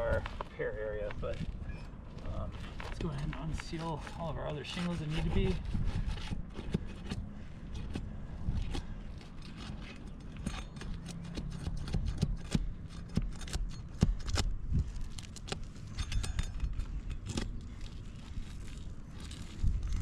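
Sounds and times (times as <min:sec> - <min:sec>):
shingles cracking and snapping: 0:08.6 - 0:20.0.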